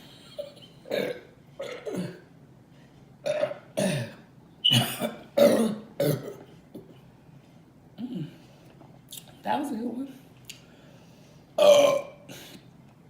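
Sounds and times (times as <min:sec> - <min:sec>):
woman burping: 0:00.4 - 0:02.3, 0:03.2 - 0:06.5, 0:11.6 - 0:12.4.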